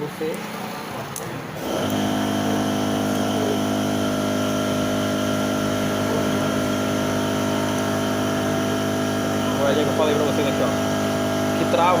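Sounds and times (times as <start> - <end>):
air compressor motor humming: 0.0 - 12.0.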